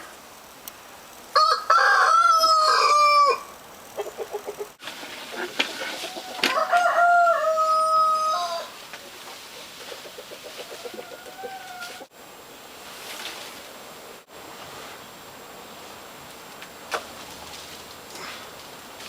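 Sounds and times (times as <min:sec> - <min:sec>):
rooster crowing: 0:01.3 - 0:03.6, 0:05.8 - 0:08.8, 0:10.4 - 0:12.1
chicken clucking: 0:04.0 - 0:07.2, 0:09.0 - 0:12.1.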